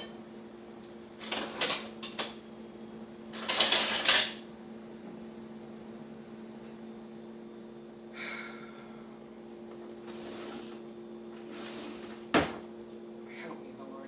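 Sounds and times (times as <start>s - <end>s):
cutlery scraping: 3.4s - 4.4s
metal cutlery clinking and rattling: 3.4s - 4.4s.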